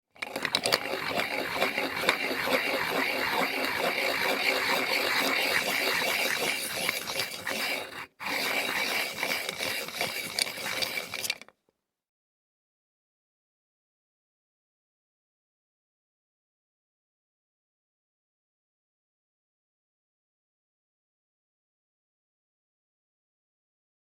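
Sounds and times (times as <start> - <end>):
pencil sharpener grinding: 0.1 - 11.6.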